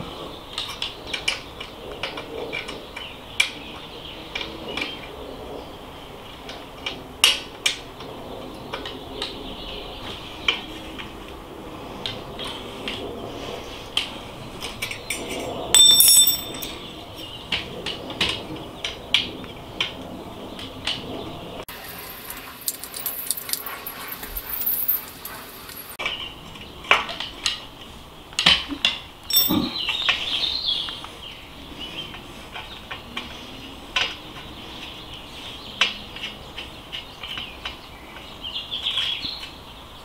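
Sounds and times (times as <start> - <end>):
metal tools clicking and clinking: 14.9 - 16.9, 22.3 - 26.0, 29.3 - 29.8
ringing metal clatter: 15.1 - 17.0, 22.7 - 26.0, 29.3 - 29.8.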